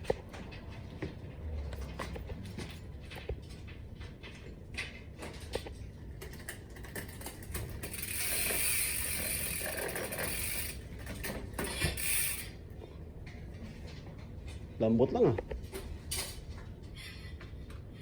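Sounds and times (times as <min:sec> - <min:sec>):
bike freewheel ratcheting: 0:06.2 - 0:12.8.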